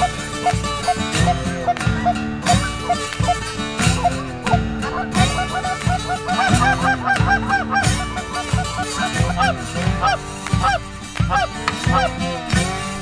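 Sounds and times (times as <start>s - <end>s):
geese honking: 0.0s - 12.5s
background music with beat: 0.0s - 13.0s.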